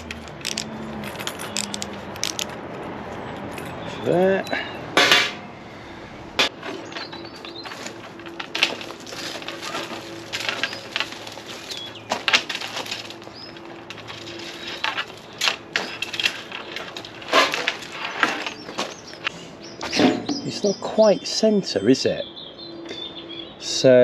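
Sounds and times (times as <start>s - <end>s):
small birds chirping: 6.8s - 8.0s, 10.5s - 12.2s, 13.2s - 17.1s, 18.3s - 24.0s.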